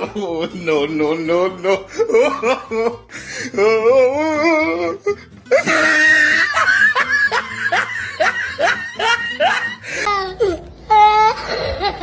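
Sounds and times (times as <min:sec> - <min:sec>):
rapid laughter: 0:05.5 - 0:10.1.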